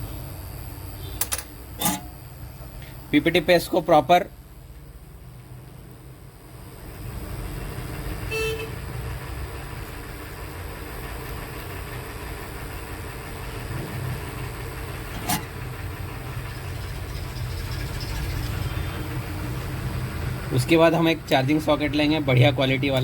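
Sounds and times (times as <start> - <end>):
traffic rumble: 6.6 - 23.0
vehicle horn toot: 8.3 - 8.8.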